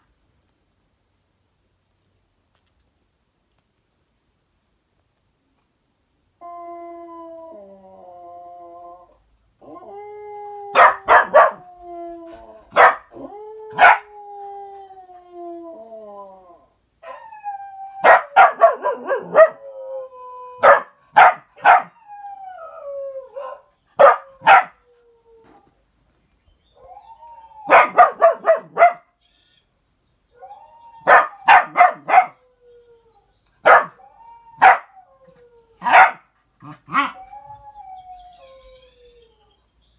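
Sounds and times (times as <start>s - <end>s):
dogs howling: 7.0s - 25.6s, 26.8s - 29.0s, 30.4s - 39.5s
dogs barking and yipping: 10.8s - 11.6s, 12.7s - 13.1s, 13.7s - 14.1s, 18.0s - 19.6s, 20.6s - 22.0s, 23.4s - 24.8s, 27.7s - 29.0s, 31.0s - 32.4s, 33.6s - 34.0s, 34.6s - 35.0s, 35.8s - 37.2s.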